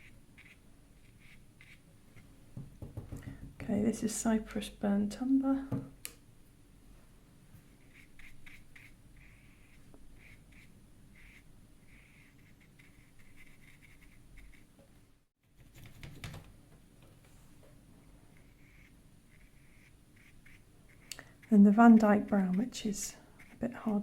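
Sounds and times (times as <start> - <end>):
scratchy strokes on paper: 0.0 - 1.8, 7.7 - 14.7, 18.3 - 24.0
soft knock: 2.6 - 3.6.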